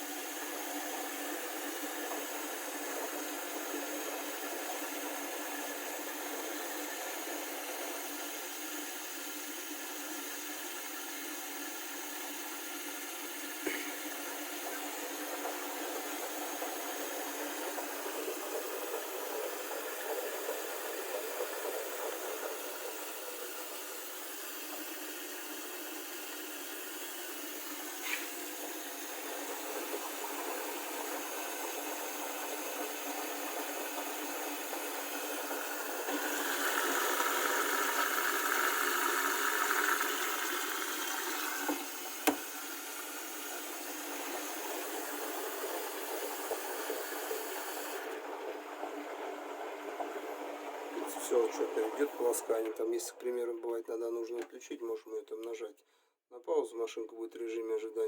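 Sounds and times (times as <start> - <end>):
washing machine running: 0.0 - 54.2
water rushing in: 27.8 - 53.5.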